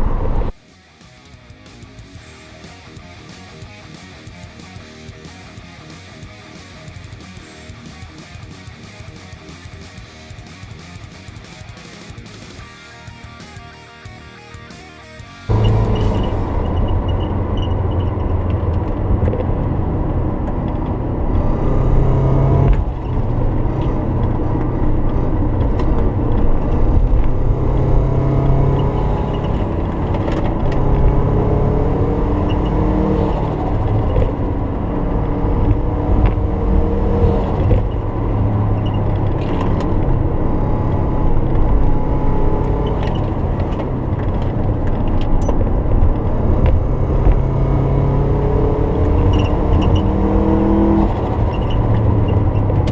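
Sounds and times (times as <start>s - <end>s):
car engine rumbling drone: 0.0s - 0.6s, 15.5s - 52.9s.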